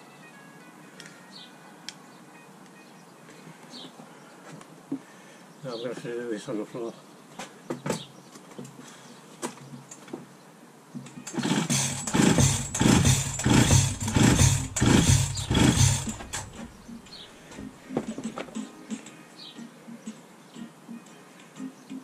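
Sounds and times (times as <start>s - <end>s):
chainsaw starter cord pulls: 11.2s - 16.8s.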